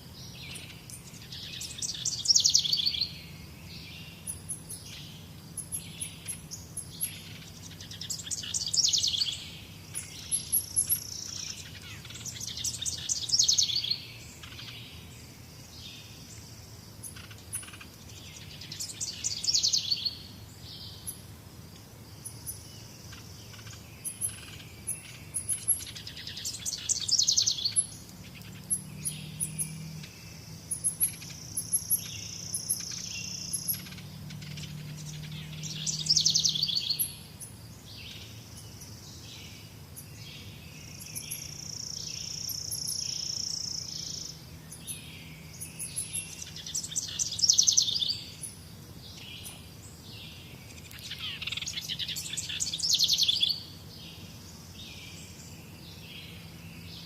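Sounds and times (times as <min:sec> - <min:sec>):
birds singing and chirping: 0:00.0 - 0:57.0.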